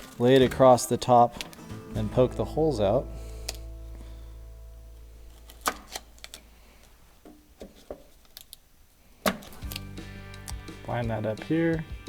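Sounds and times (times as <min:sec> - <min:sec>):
hands handling tape clicks: 0:01.3 - 0:01.8, 0:03.4 - 0:03.7, 0:05.3 - 0:10.7.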